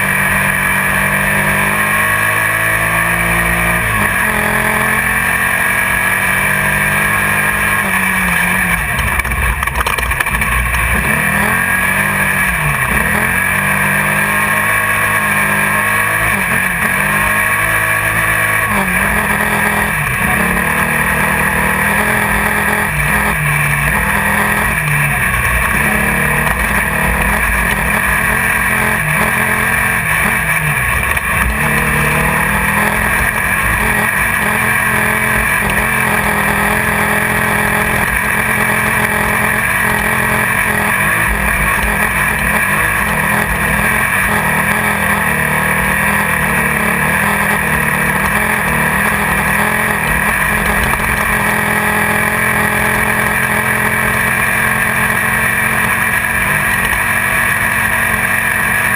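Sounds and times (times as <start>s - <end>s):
race car engine running hard: 0.0s - 58.9s.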